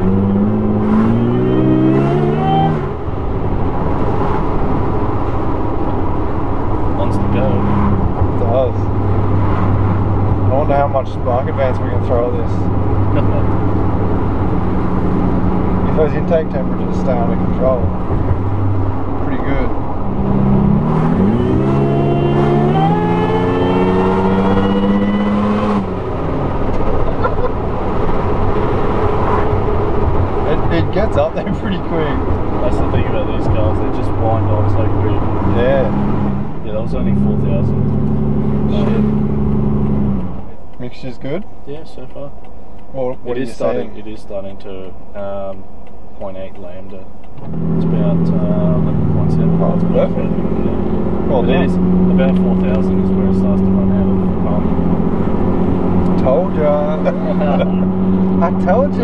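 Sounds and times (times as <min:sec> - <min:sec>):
car engine accelerating hard: 0:00.0 - 0:41.1, 0:46.2 - 0:59.0
road noise: 0:00.0 - 0:59.0
supercharger whine: 0:04.7 - 0:31.0.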